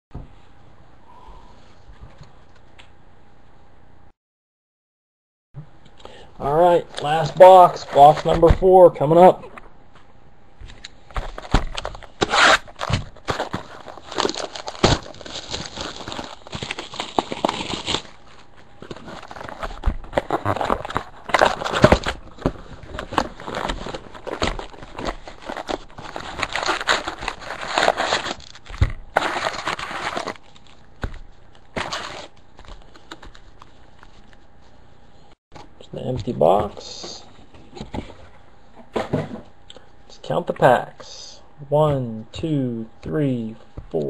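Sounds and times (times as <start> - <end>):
rustling of cardboard and foil packs: 7.0 - 9.3, 11.1 - 34.8
plastic wrap crinkling and tearing: 11.4 - 34.4.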